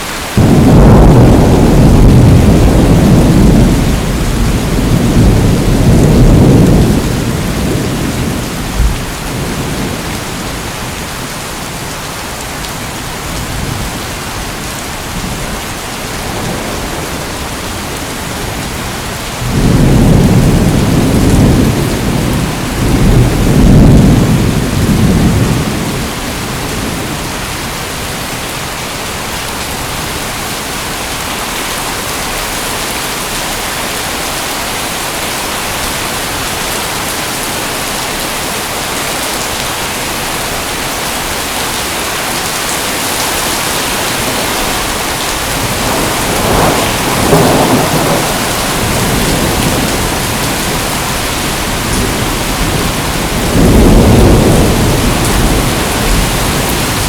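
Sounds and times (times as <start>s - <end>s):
heavy rain falling: 0.0s - 57.0s
rolling thunder: 0.4s - 11.1s, 15.0s - 27.6s, 40.6s - 57.0s.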